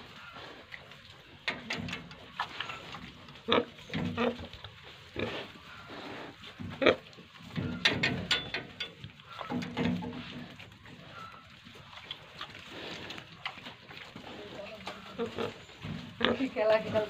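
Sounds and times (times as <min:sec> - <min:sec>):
pigs grunting and squeaking: 0:00.0 - 0:17.0.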